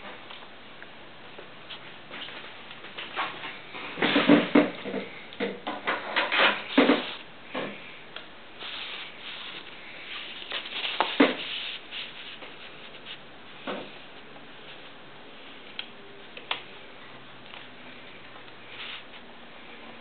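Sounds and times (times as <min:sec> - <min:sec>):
rubbing and rustling: 0:05.9 - 0:07.8, 0:08.6 - 0:15.0, 0:18.6 - 0:19.3.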